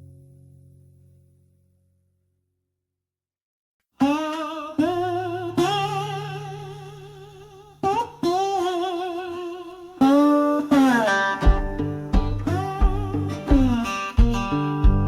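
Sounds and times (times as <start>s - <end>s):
plucked guitar notes: 4.0s - 15.0s
slow blues melody with vibrato: 4.0s - 15.0s
low held notes: 10.8s - 15.0s.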